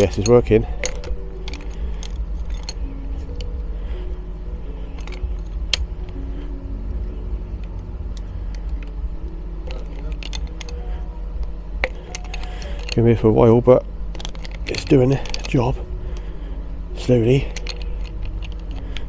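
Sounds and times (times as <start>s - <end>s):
spanner clicking and scraping on nut: 0.0s - 3.7s, 4.9s - 6.2s, 7.6s - 13.2s, 14.2s - 16.3s, 17.0s - 19.0s
low rumble: 0.0s - 19.0s.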